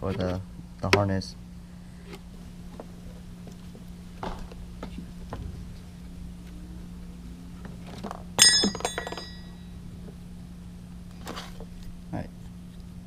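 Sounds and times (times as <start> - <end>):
ringing clink of hard part: 8.4 - 9.6.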